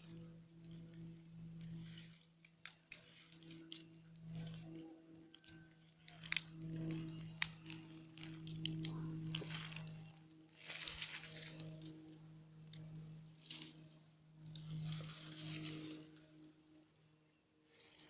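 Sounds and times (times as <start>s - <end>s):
low droning hum: 0.0s - 18.0s
sharp clicks and rustles: 5.4s - 16.5s.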